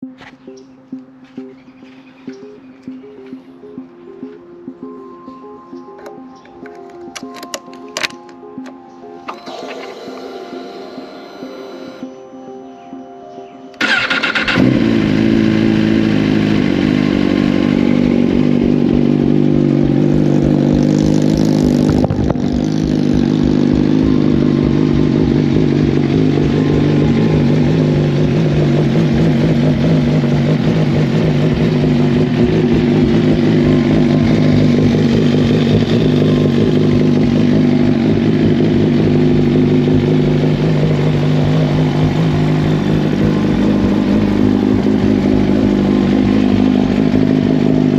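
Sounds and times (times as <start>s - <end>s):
motorcycle engine running: 13.8s - 47.9s.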